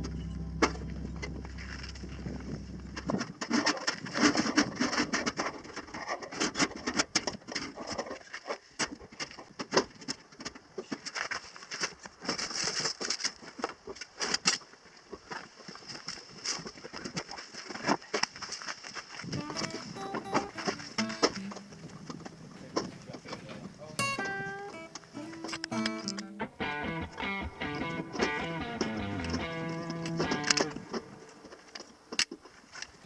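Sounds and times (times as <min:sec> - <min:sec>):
low steady hum: 0:00.0 - 0:03.3.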